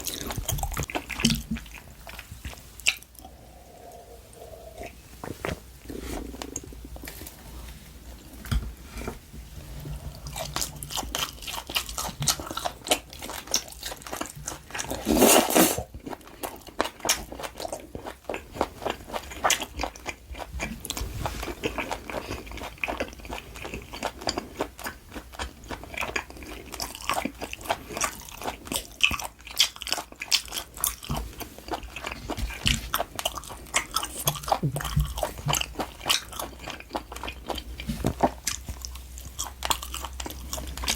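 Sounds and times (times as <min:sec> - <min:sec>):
chewing and biting meat: 0:10.1 - 0:15.0, 0:15.9 - 0:40.9.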